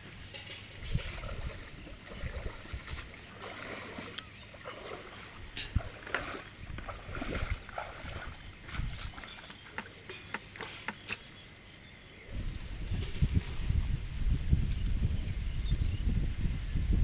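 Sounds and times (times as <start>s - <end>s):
water splashing and sloshing: 0.0s - 11.4s.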